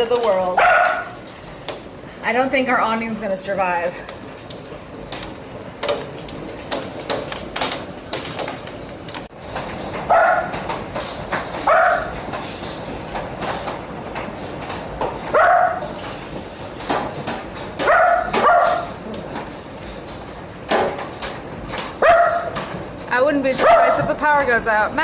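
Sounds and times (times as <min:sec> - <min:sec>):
hail pounding down: 0:00.0 - 0:12.2
dog barking: 0:00.6 - 0:01.2, 0:10.1 - 0:10.6, 0:11.6 - 0:12.2, 0:15.3 - 0:15.9, 0:17.8 - 0:19.0, 0:22.0 - 0:22.6, 0:23.6 - 0:24.1.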